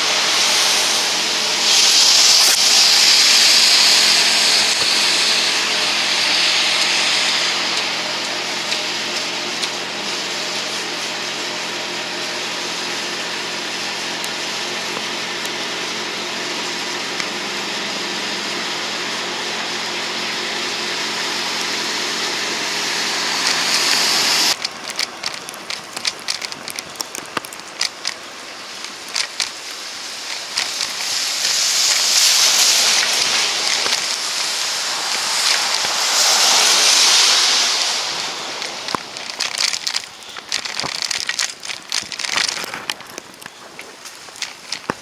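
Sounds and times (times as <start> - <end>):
crackling over hiss: 0.0 - 45.0
steady motor hum: 0.0 - 45.0
tyres on slushy pavement: 0.0 - 45.0.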